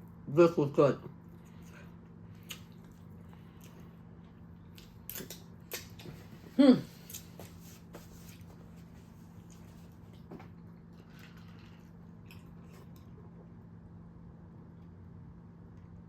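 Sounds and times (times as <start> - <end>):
chewing with mouth clicks: 1.3 - 6.1
person humming: 6.6 - 7.0.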